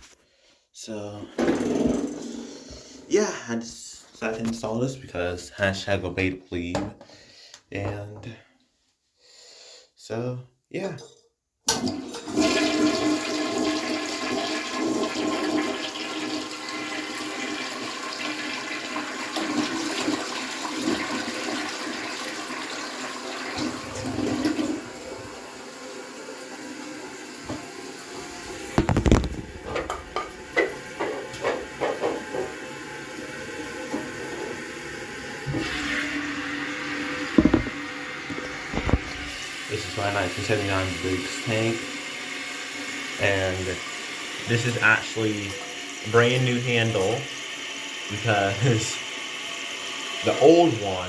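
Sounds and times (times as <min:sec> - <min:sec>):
toilet flushing: 0:01.2 - 0:03.8, 0:11.7 - 0:51.0
toilet tank refilling hiss: 0:11.7 - 0:51.0
knocks: 0:37.4 - 0:37.8.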